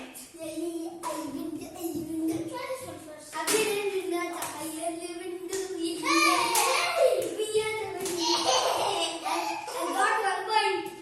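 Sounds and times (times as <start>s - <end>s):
hand claps: 3.4s - 4.6s, 6.4s - 7.4s.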